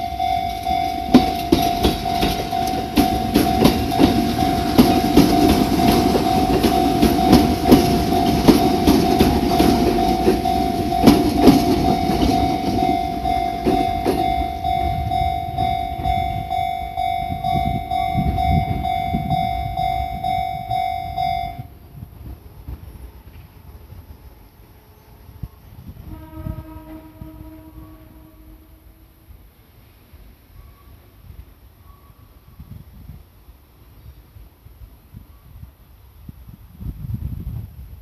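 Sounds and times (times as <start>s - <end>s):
train wheels clacking over rail joints: 0.0s - 20.8s
level crossing warning bell ringing: 0.0s - 21.8s.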